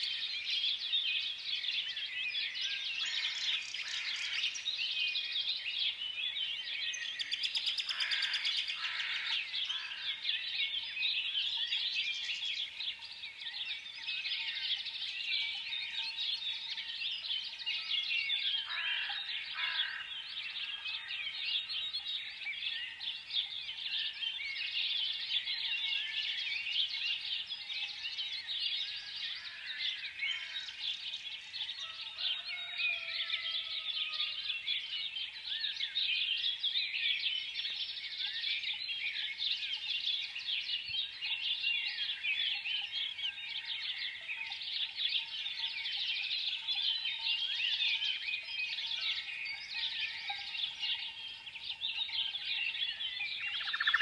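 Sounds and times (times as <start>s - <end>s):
small birds chirping chorus: 0.0s - 54.0s
louder bird calls: 53.0s - 54.0s.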